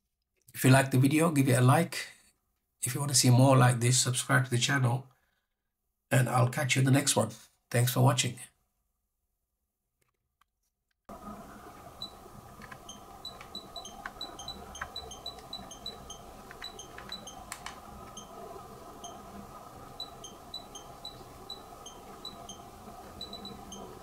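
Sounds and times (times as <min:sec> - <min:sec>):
steady background hiss: 0:11.1 - 0:24.0
faint clicks: 0:11.6 - 0:24.0.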